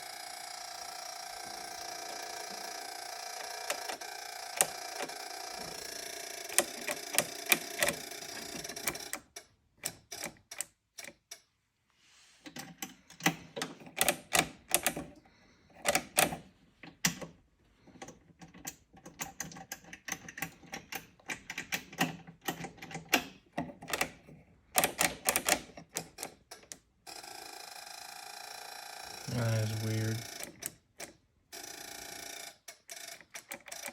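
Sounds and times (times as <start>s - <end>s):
steady electrical hum: 27.8s - 30.5s.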